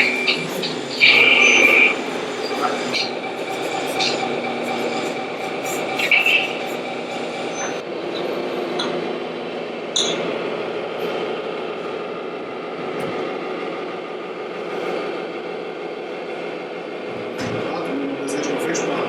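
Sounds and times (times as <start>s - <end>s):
model truck engines running: 0.0s - 11.8s
indoor hall hum: 0.0s - 19.0s.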